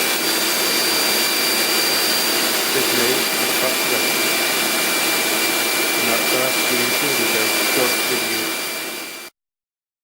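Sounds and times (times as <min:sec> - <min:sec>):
thin high whine: 0:00.0 - 0:09.3.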